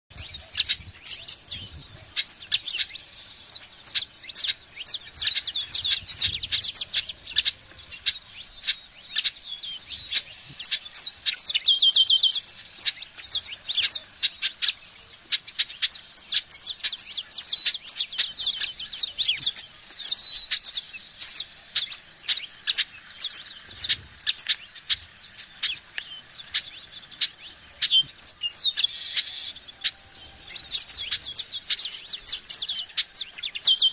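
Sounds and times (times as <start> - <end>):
small birds chirping: 0.1 - 33.9.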